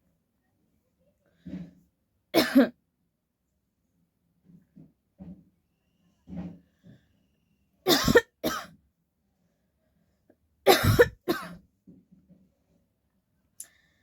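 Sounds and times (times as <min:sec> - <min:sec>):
person coughing: 0:02.4 - 0:02.7, 0:07.9 - 0:08.7, 0:10.7 - 0:11.6.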